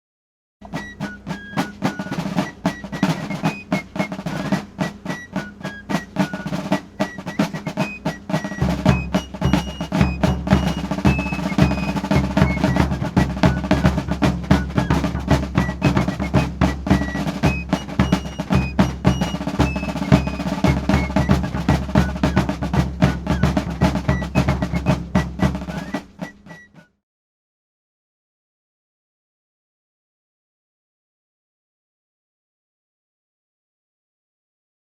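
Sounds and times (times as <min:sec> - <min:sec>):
high melody of short notes: 0:00.6 - 0:26.6
fast dense drum strokes: 0:00.7 - 0:26.6
deep heavy drum beat: 0:01.9 - 0:26.3.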